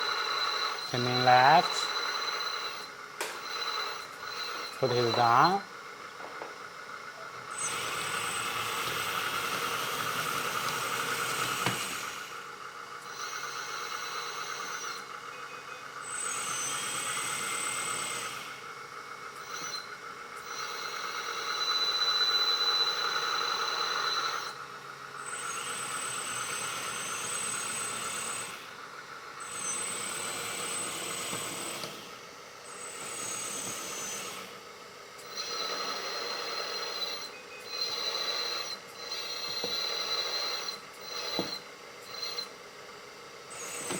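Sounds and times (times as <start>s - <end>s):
high steady tones: 0.0s - 5.6s
hydraulic pump whining: 0.0s - 43.9s.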